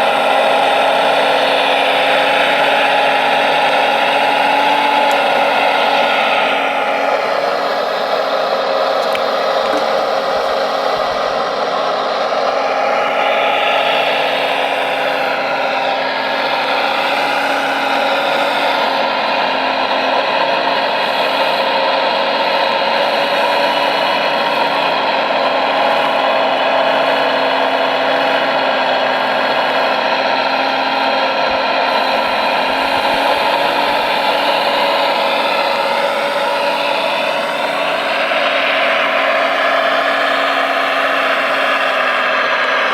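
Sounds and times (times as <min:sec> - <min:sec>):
electric motors whining: 0:00.0 - 0:42.9.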